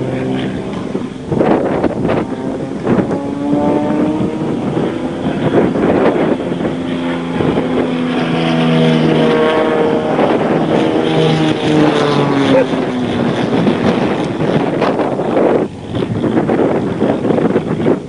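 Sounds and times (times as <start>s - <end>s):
wind noise on microphone: 0.0s - 18.0s.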